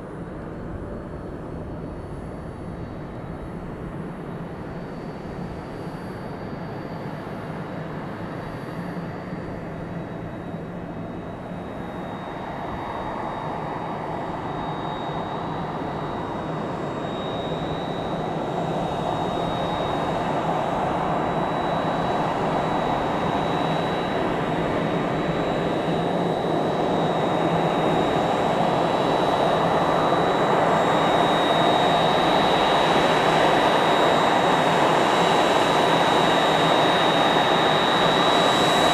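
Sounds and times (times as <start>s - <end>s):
jet engines rumbling and whining: 0.0s - 38.9s.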